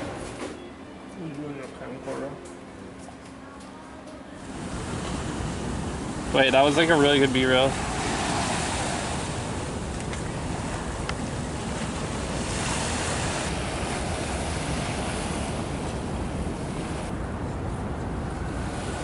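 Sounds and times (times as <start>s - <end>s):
wind: 0.0s - 19.0s
rushing water: 4.4s - 17.2s.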